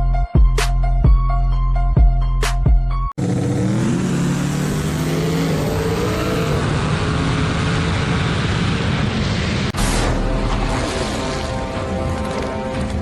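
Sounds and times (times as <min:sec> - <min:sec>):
car engine accelerating: 0:03.2 - 0:11.7.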